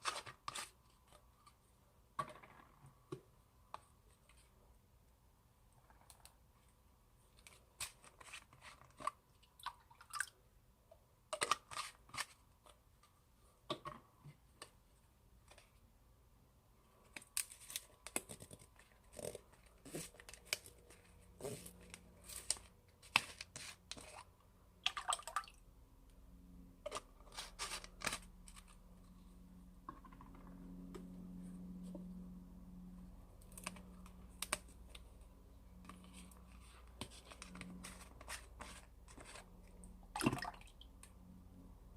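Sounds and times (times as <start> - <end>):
low steady hum: 18.4 - 41.9.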